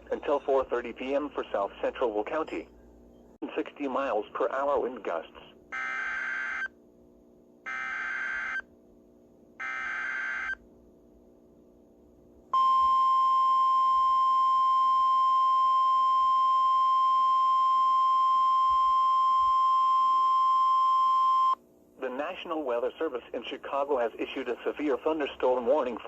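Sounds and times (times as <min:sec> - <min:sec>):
steady alarm tone: 0:05.8 - 0:06.7, 0:07.7 - 0:08.6, 0:09.6 - 0:10.6.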